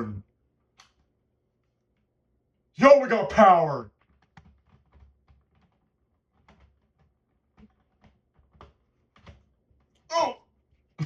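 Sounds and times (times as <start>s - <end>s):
faint clicks and taps: 0.7s - 2.2s, 3.9s - 11.0s.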